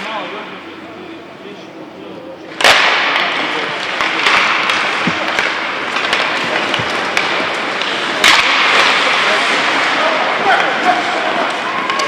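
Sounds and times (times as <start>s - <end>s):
hockey sticks and puck clicking: 2.6s - 12.0s
skates scraping on ice: 3.4s - 12.0s.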